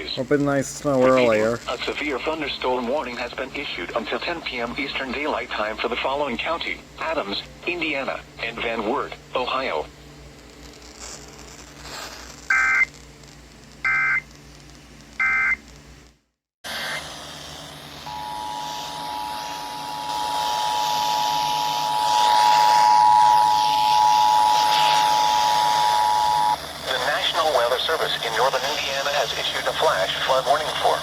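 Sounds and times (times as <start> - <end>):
radio hiss: 0.0 - 15.6, 17.9 - 31.0
data signal bursts: 12.5 - 13.0, 18.0 - 27.6
two-tone attention signal: 18.1 - 26.6.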